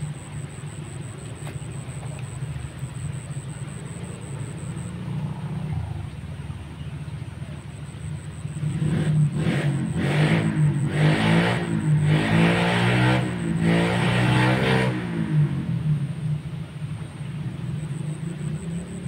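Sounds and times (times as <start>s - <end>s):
motorcycle engine revving: 8.1s - 16.1s.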